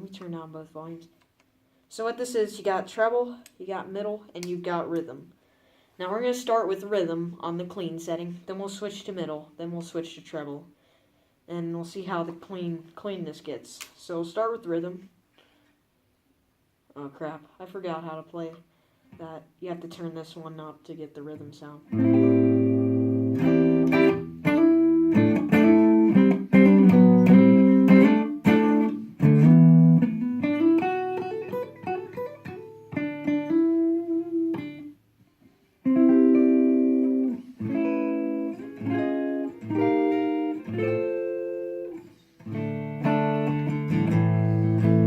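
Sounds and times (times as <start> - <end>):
clean electric guitar: 21.9 - 45.0.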